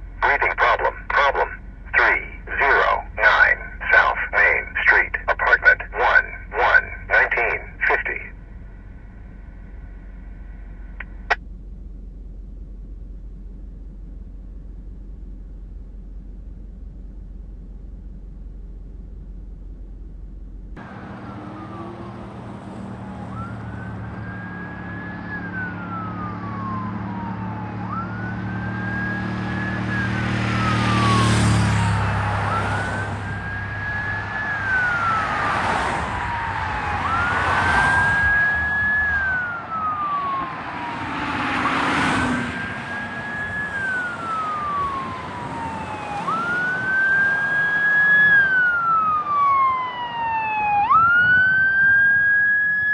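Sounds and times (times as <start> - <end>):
ambulance siren wailing: 0.0 - 8.4, 23.1 - 52.9
vehicle engine and road noise: 0.0 - 52.9.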